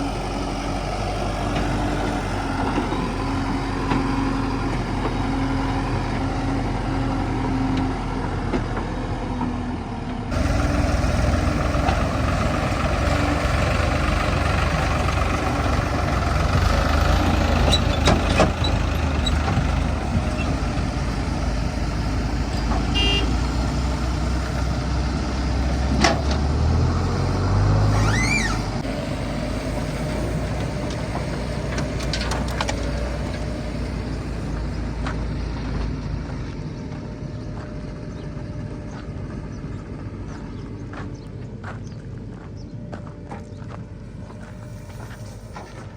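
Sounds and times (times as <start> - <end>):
diesel engine running: 0.0 - 45.9
brief squeal: 27.9 - 28.8.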